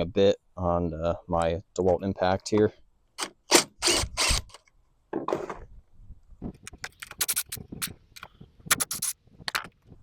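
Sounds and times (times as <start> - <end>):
short scraping noise: 7.0 - 7.9, 8.7 - 9.2.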